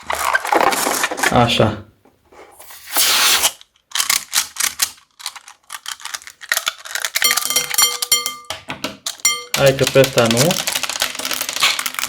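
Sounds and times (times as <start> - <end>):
beads clicking and rattling: 3.9 - 8.3, 9.0 - 12.0.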